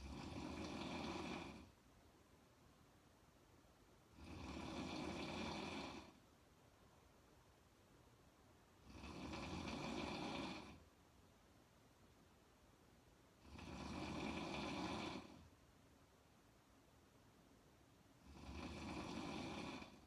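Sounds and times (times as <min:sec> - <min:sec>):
woman snoring: 0:00.0 - 0:01.7, 0:04.1 - 0:06.2, 0:08.8 - 0:10.8, 0:13.4 - 0:15.5, 0:18.2 - 0:20.0
quiet breathing: 0:00.0 - 0:01.9, 0:03.9 - 0:06.4, 0:08.7 - 0:11.0, 0:13.3 - 0:15.6, 0:18.0 - 0:20.0.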